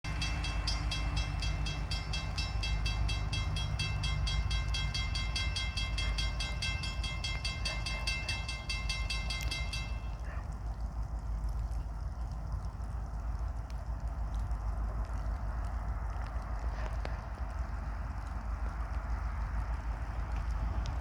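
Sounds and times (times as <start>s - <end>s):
crossing bell ringing rapidly: 0.0s - 10.3s
low rumble of a train: 0.0s - 21.0s.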